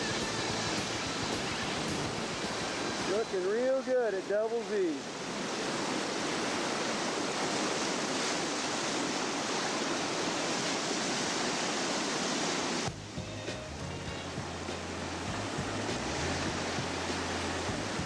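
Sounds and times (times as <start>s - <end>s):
low bass background music: 0.0s - 3.2s, 12.9s - 18.0s
whitewater rapids roaring: 0.0s - 18.0s.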